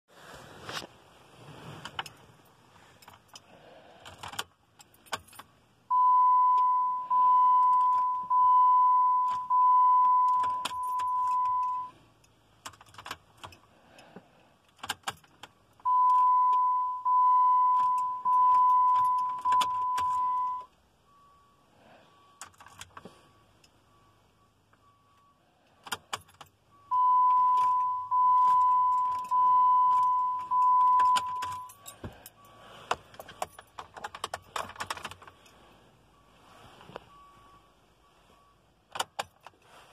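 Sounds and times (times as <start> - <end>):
keys jangling in ignition: 2.0 - 5.5, 7.6 - 8.2, 9.2 - 13.7, 14.6 - 16.3, 17.7 - 20.7, 22.4 - 23.0, 25.8 - 26.6, 27.3 - 35.6, 38.9 - 39.6
car warning chime: 5.1 - 12.4, 15.8 - 39.5.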